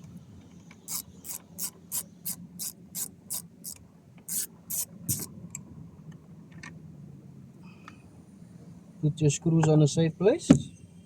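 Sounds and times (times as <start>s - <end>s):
hand ratchet clicking: 0.8s - 5.3s.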